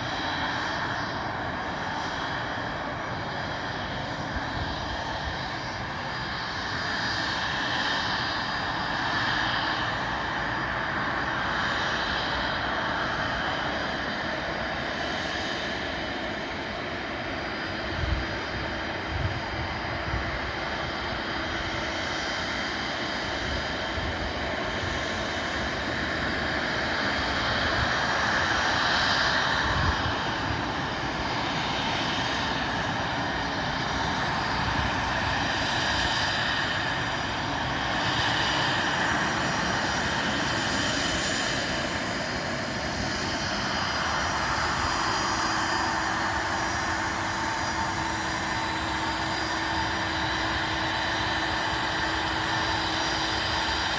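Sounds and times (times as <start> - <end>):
jet engine whine: 0.0 - 53.9
rushing jet noise: 25.5 - 53.9.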